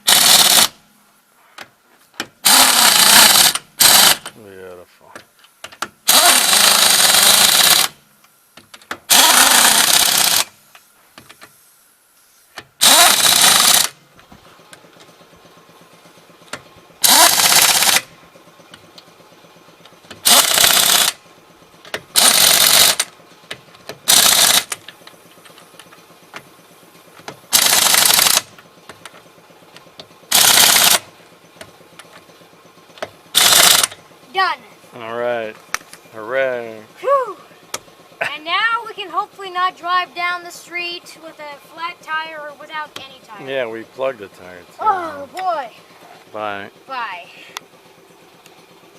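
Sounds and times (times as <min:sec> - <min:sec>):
pneumatic impact wrench bursts: 0:00.0 - 0:00.8, 0:02.4 - 0:04.4, 0:05.6 - 0:08.0, 0:08.6 - 0:11.7, 0:12.4 - 0:14.0, 0:17.0 - 0:18.1, 0:20.1 - 0:21.2, 0:21.9 - 0:25.6, 0:27.2 - 0:29.0, 0:30.3 - 0:31.1, 0:33.0 - 0:34.0.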